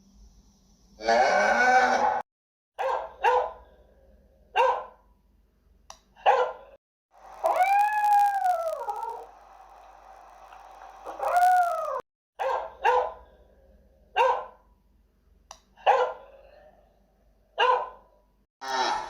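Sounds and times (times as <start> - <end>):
dog barking: 2.8 - 3.7, 4.5 - 5.0, 6.2 - 6.8, 12.4 - 13.3, 14.1 - 14.6, 15.8 - 16.7, 17.6 - 18.1
dog howling: 7.4 - 9.3, 11.0 - 12.0.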